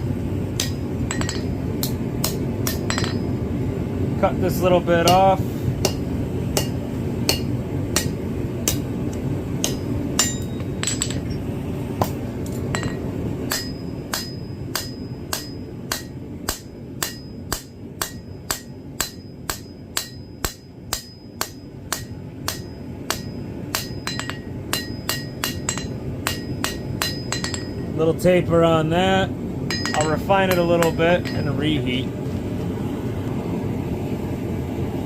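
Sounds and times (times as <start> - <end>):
hammer striking iron on anvil: 0.6 - 3.4, 5.0 - 8.9, 9.6 - 11.4, 12.0 - 27.9, 29.7 - 31.8.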